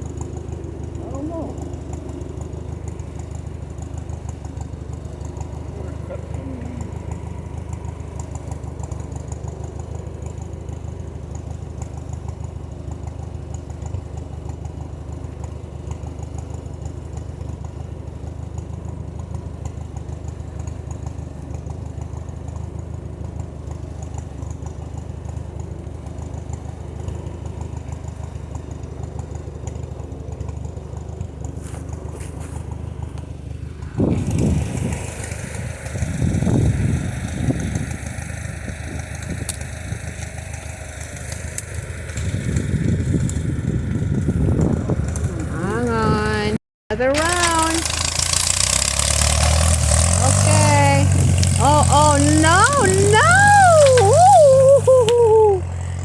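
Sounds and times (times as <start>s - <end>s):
engine rumble: 0.0s - 56.0s
vehicle engine idling: 0.0s - 56.0s.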